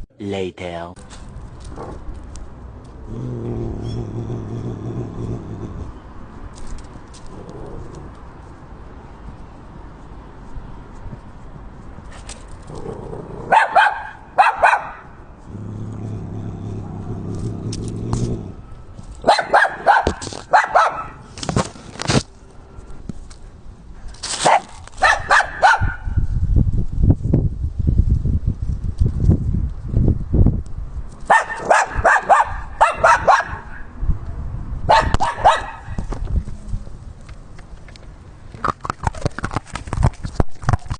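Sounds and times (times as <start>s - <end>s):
low rumbling: 3.0s - 6.4s, 15.4s - 19.1s
dog barking: 13.5s - 15.1s, 19.3s - 21.2s, 24.5s - 26.1s, 31.3s - 33.9s, 34.9s - 36.0s.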